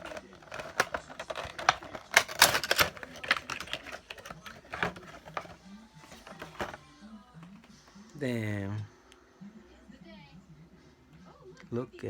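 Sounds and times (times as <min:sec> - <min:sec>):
handling cardboard and plastic packaging: 0:00.0 - 0:07.8.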